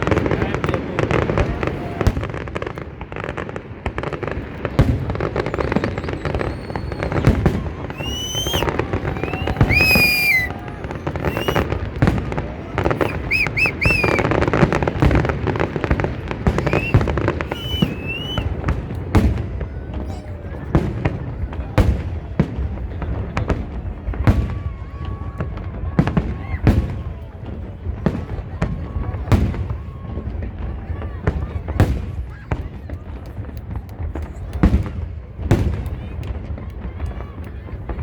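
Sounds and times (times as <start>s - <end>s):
fireworks cracks and bangs: 0.0s - 38.0s
fireworks high whistles: 5.1s - 12.2s, 12.8s - 14.6s, 16.4s - 18.6s.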